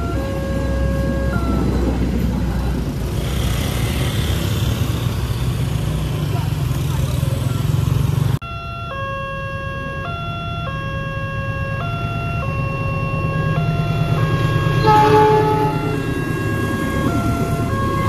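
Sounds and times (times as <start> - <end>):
two-tone warning siren: 0.0 - 3.2, 7.5 - 18.0
louder warning tone: 0.0 - 4.2, 7.4 - 18.0
low engine rumble: 0.0 - 8.4.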